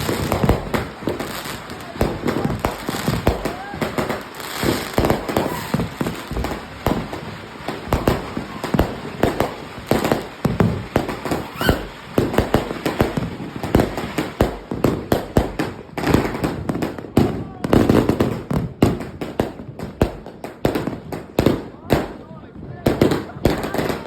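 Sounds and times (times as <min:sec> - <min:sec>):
fireworks bangs: 0:00.0 - 0:24.0
rising firework whistle: 0:02.5 - 0:06.6, 0:11.3 - 0:12.0.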